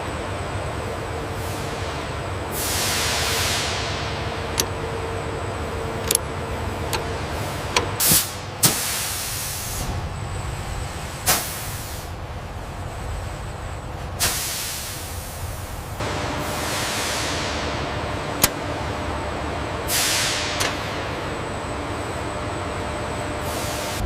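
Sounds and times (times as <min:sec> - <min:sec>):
machine hum: 0:00.0 - 0:24.0
compressed air hiss: 0:02.5 - 0:04.0, 0:08.0 - 0:09.9, 0:11.3 - 0:12.2, 0:14.2 - 0:15.7, 0:19.9 - 0:20.7
short air bursts: 0:02.5 - 0:04.1, 0:08.0 - 0:09.9, 0:14.2 - 0:15.7, 0:19.9 - 0:21.0.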